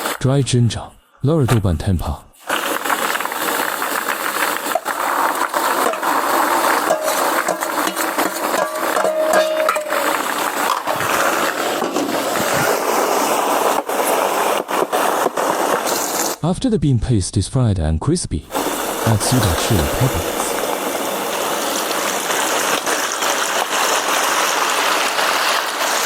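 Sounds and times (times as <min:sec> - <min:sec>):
paste sizzling in hot oil: 0:02.4 - 0:16.4, 0:18.5 - 0:26.0
spatula scraping pan: 0:02.4 - 0:16.4.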